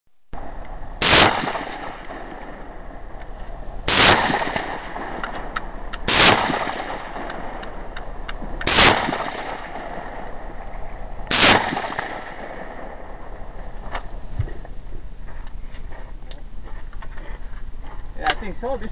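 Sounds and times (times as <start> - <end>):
gunshots with echo: 0.4 - 3.0, 3.9 - 8.0, 8.6 - 13.4.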